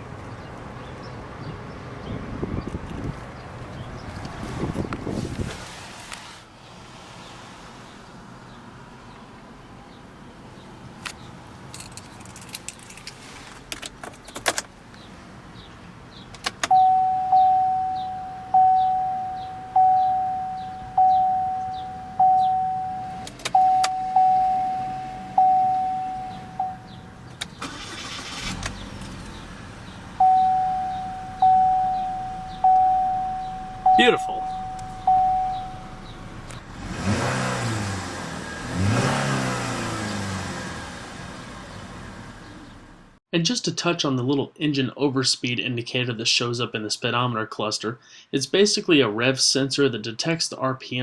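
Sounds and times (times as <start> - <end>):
rustling clatter: 11.7 - 14.7
car warning chime: 16.6 - 28.5, 30.1 - 36.5.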